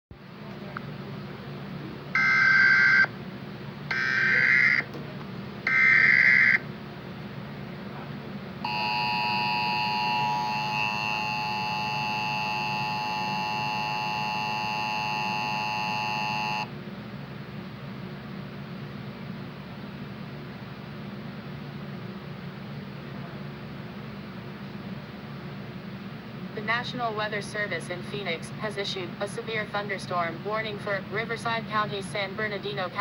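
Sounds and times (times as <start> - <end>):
two-tone attention signal: 8.6 - 16.7.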